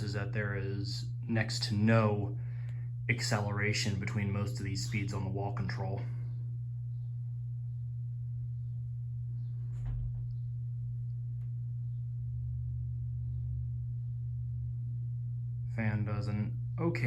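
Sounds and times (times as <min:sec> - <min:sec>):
ceiling fan motor humming: 0:00.0 - 0:17.0.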